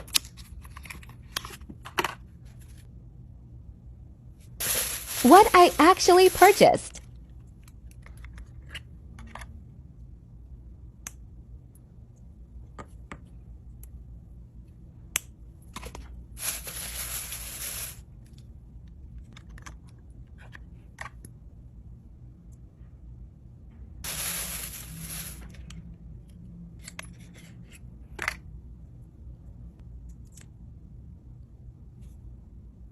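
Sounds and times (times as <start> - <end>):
paper rustle: 4.6 - 6.9, 16.4 - 18.0, 24.1 - 25.6.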